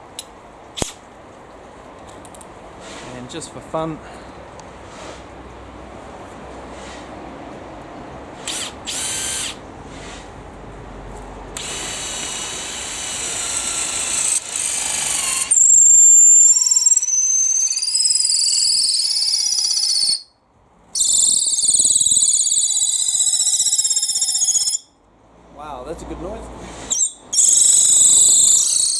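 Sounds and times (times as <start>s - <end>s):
cordless drill boring: 8.4s - 9.6s, 11.6s - 20.2s, 21.0s - 24.8s, 26.9s - 28.9s
high-pitched squealing whine: 11.6s - 20.3s, 21.0s - 24.8s, 26.9s - 28.9s.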